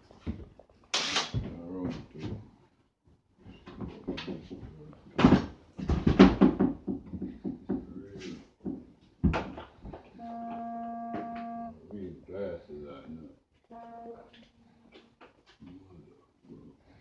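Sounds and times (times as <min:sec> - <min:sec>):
mobile phone ringtone: 0:10.2 - 0:11.8.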